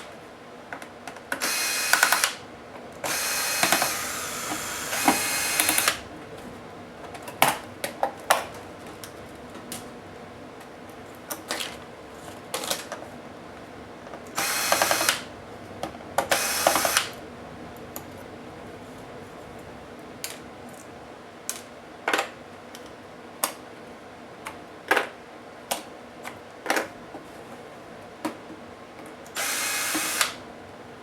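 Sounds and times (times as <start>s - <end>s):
electric screwdriver whirring: 1.4s - 2.4s, 3.0s - 6.0s, 14.4s - 15.3s, 16.2s - 17.2s, 29.4s - 30.4s
small sharp clicks of screws: 1.4s - 2.4s, 29.4s - 30.4s.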